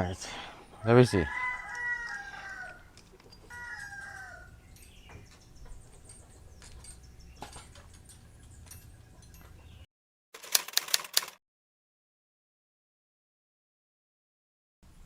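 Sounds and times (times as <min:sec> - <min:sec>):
loud rapid rattling: 0:10.4 - 0:11.4.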